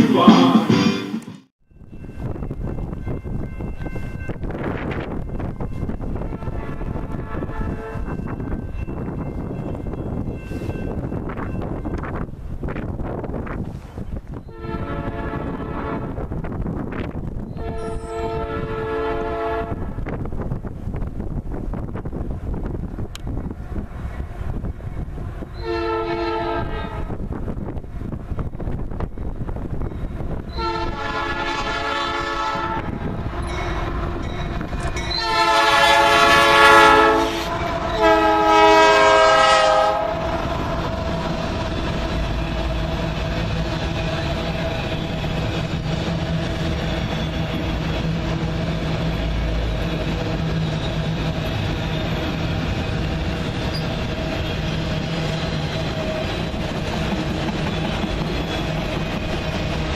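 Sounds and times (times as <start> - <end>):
locomotive air horn blasts: 6.2 - 8.2, 14.5 - 16.2, 17.6 - 20.0, 25.6 - 27.1, 30.5 - 34.2, 35.1 - 40.8
train wheels clattering: 40.1 - 59.9.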